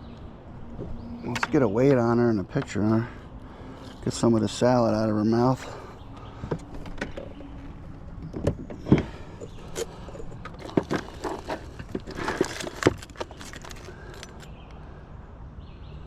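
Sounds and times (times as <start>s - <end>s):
fishing gear clicking and rattling: 6.2s - 14.7s.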